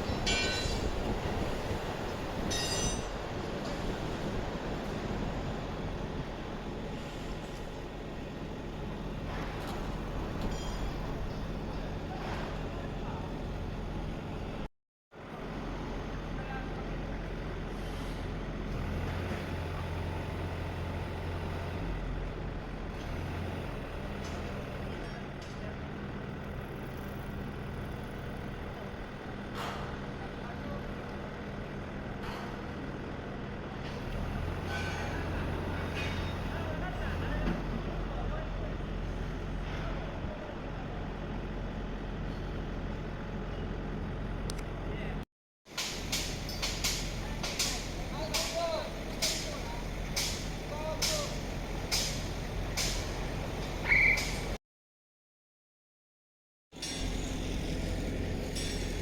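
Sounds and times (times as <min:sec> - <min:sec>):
street noise: 0:00.0 - 0:54.6
diesel engine running: 0:03.1 - 0:45.2, 0:45.8 - 0:54.6, 0:56.8 - 0:59.0.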